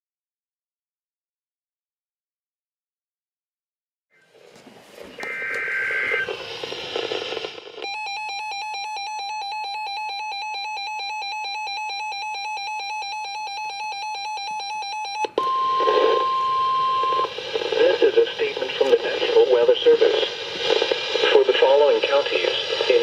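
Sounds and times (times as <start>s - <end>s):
radio static: 5.0s - 7.8s, 15.8s - 23.0s
electronic alarm warble: 5.2s - 6.3s, 7.8s - 17.3s.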